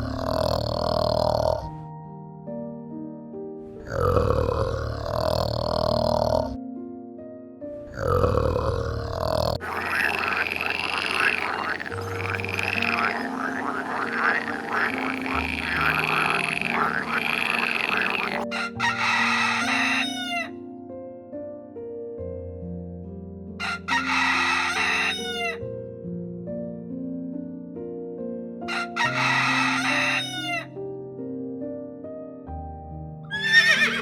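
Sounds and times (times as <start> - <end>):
animal calls: 0.0 - 1.8, 3.8 - 6.6, 7.9 - 20.5, 23.6 - 25.6, 28.7 - 30.7, 33.3 - 34.0
background music: 0.0 - 21.5, 22.5 - 27.2, 28.6 - 34.0.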